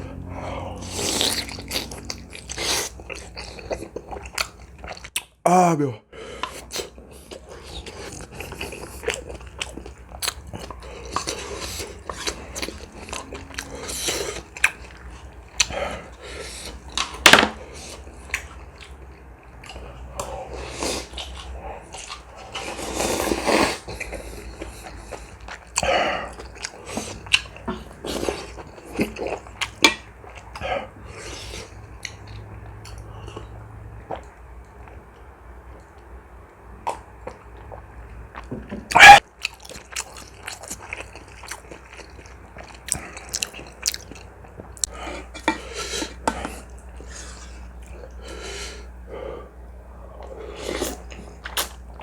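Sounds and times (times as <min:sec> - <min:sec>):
wet chewing and mouth smacks: 0:36.8 - 0:48.2, 0:50.8 - 0:52.0.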